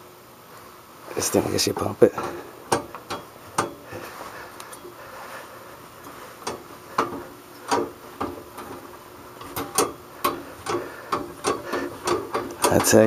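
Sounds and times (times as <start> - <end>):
sewing machine treadle clacking: 9.4 - 13.0.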